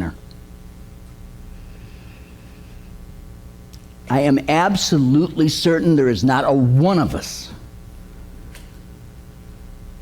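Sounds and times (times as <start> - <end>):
low electrical hum: 0.0 - 10.0.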